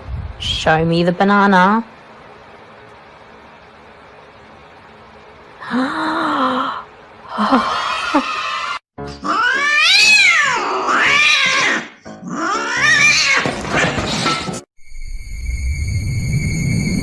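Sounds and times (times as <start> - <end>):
cat yowling: 7.7 - 13.8.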